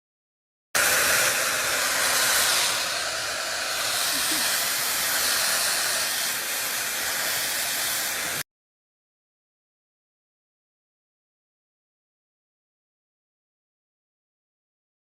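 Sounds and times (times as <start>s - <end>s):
loud steady hissing: 0.8s - 8.4s.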